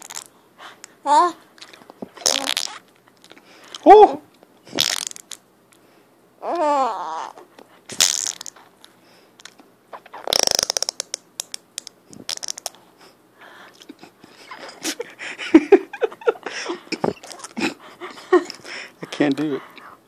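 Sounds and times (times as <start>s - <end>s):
sputtering fart sound: 4.7s - 5.4s, 9.9s - 11.2s, 12.1s - 12.7s
baby's high vocal sounds: 6.4s - 7.4s.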